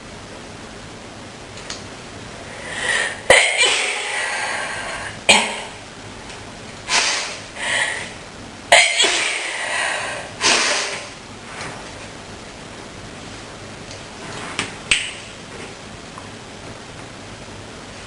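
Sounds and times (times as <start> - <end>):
breathy exhales: 2.4 - 3.3, 6.9 - 8.2, 9.4 - 11.2
gasping inhales: 2.5 - 3.2, 6.9 - 8.2
woman sneezing: 3.2 - 4.4, 8.7 - 9.8.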